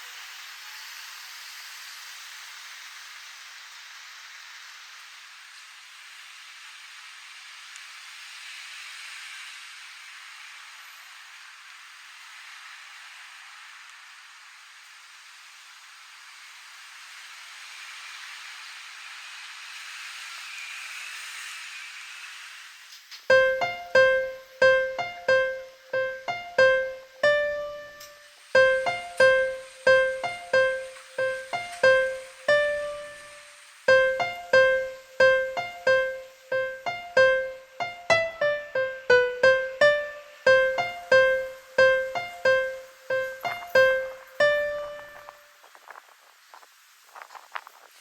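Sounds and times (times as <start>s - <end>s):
simple piano melody: 23.3s - 45.6s.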